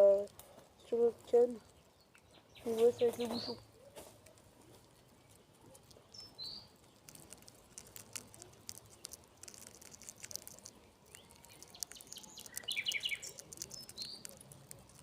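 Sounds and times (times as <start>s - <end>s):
small birds chirping: 0.0s - 15.0s
faint clicks: 4.2s - 15.0s.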